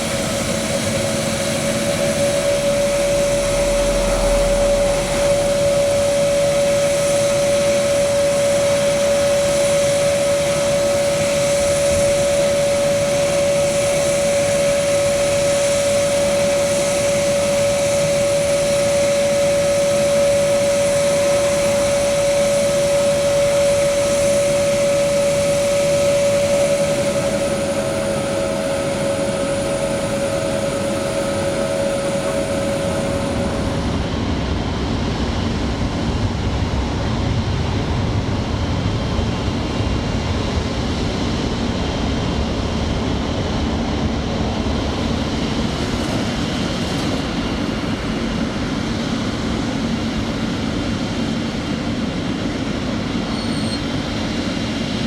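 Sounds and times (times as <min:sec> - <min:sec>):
engine rushing noise: 0:00.0 - 0:17.0
jet engines idling whine: 0:00.0 - 0:55.0.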